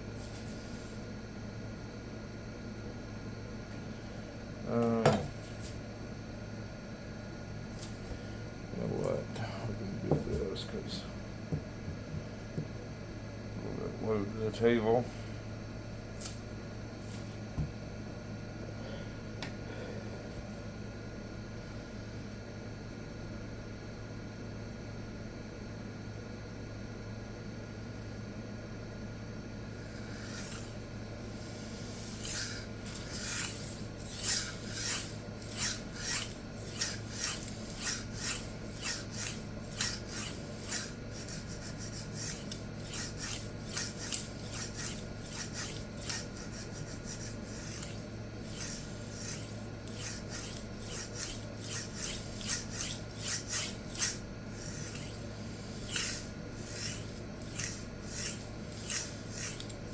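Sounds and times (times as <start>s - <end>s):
knife scraping on sharpening stone: 31.8s - 59.9s.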